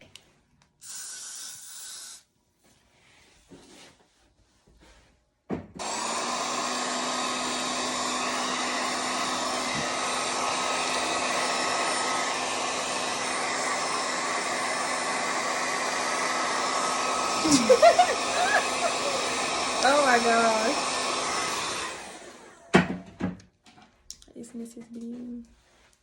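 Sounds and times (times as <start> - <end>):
hair dryer running: 5.8 - 23.1.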